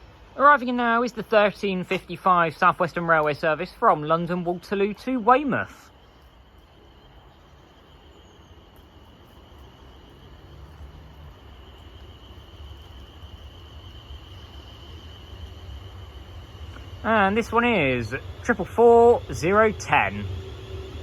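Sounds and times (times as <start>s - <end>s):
train low rumble: 0.0s - 21.0s
high-pitched whine: 6.8s - 21.0s.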